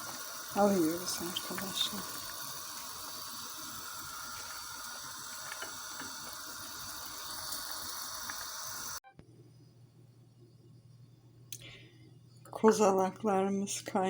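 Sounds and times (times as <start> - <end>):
water boiling and bubbling: 0.0 - 9.0.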